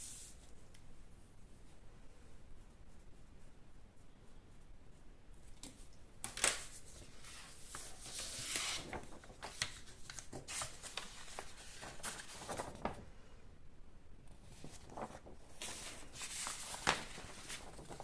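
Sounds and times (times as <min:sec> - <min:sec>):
paper rustling: 0:05.6 - 0:13.1, 0:14.3 - 0:18.0.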